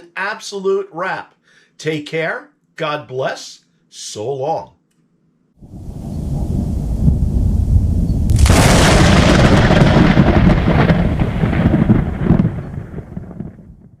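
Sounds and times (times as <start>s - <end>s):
deep rumble: 5.7s - 13.8s
sharp rolling crash: 6.3s - 13.7s.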